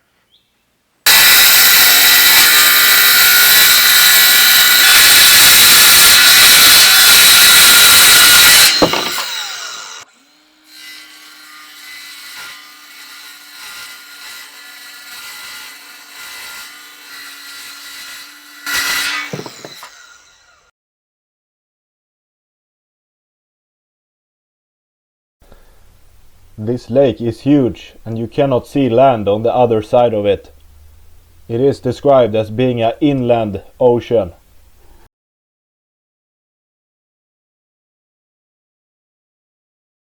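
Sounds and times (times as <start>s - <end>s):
power saw cutting plywood: 1.1s - 20.7s.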